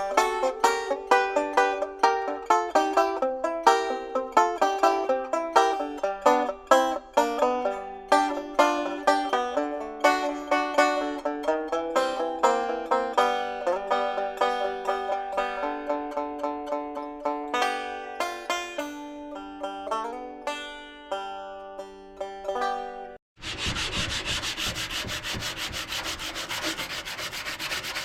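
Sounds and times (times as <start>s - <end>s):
bluegrass banjo picking: 0.0s - 23.2s, 24.5s - 28.0s.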